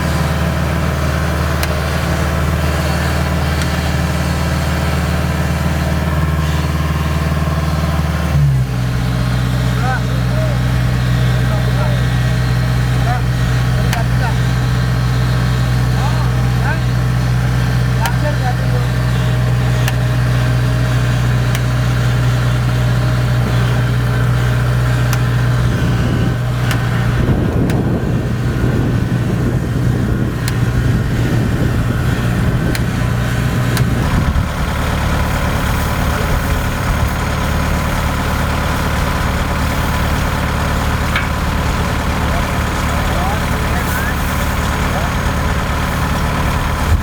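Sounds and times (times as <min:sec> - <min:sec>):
diesel engine running: 0:00.0 - 0:47.0
rattling noise: 0:09.9 - 0:47.0.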